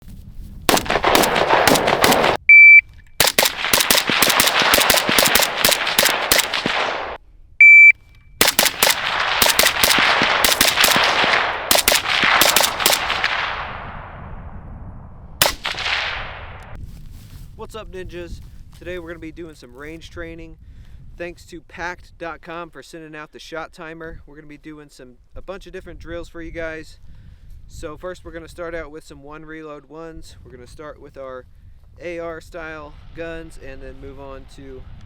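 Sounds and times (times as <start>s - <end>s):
gunfire: 0.7s - 2.5s, 3.2s - 7.2s, 8.4s - 14.2s, 15.4s - 16.8s
electronic start beep: 2.5s - 2.8s, 7.6s - 8.0s.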